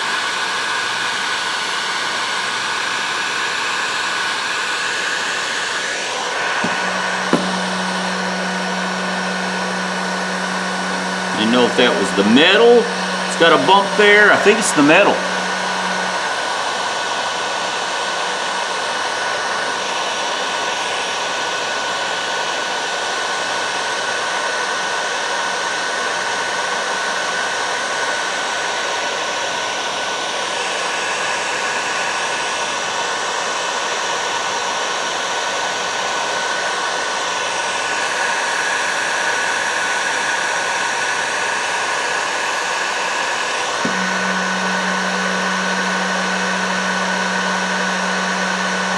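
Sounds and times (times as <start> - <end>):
heat gun blowing: 3.0 - 21.1, 37.8 - 48.9.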